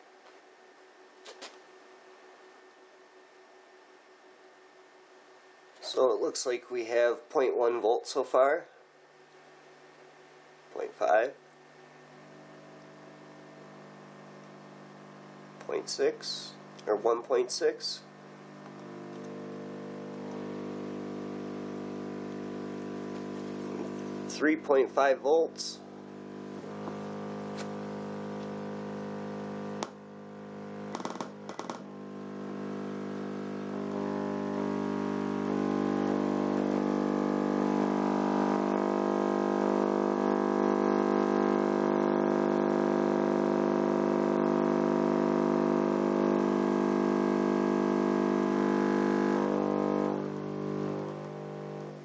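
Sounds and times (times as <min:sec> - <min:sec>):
subwoofer test tone hum: 0:00.0 - 0:52.0
clicks: 0:30.9 - 0:31.9.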